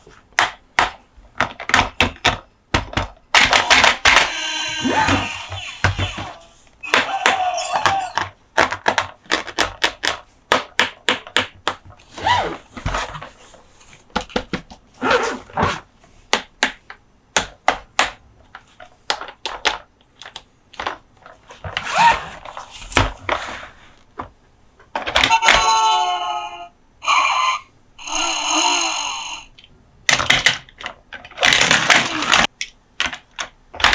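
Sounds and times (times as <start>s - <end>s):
clicks and taps on toys: 0.1s - 4.2s, 6.9s - 12.0s, 16.3s - 21.3s
plastic packaging scraping and rustling: 31.2s - 32.5s.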